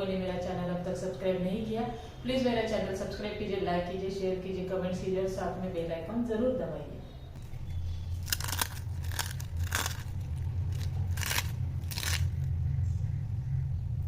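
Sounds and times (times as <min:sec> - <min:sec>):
low hum: 0:07.0 - 0:14.0
fried snack crunching: 0:08.1 - 0:12.5.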